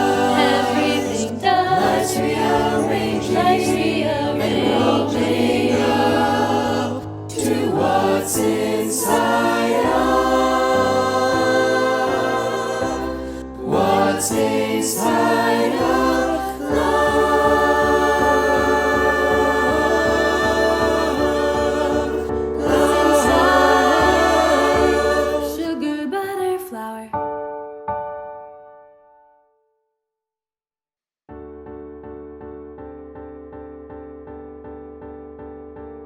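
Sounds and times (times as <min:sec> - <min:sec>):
choir singing in harmony: 0:00.0 - 0:26.1.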